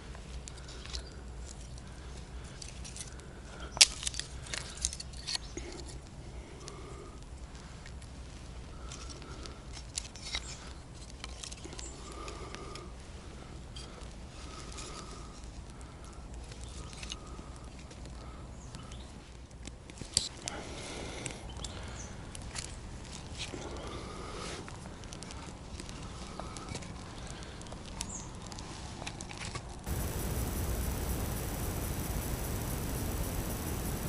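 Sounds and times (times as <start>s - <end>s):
small clicks and rustles: 0.0s - 6.2s, 7.2s - 20.6s, 21.2s - 34.0s
low steady hum: 29.9s - 34.0s.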